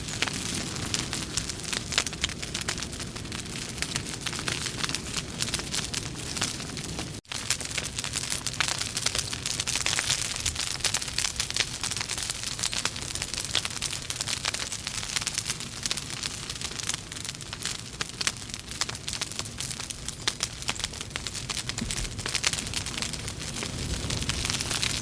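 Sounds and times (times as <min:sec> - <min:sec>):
logs crackling in a fireplace: 0:00.0 - 0:25.0.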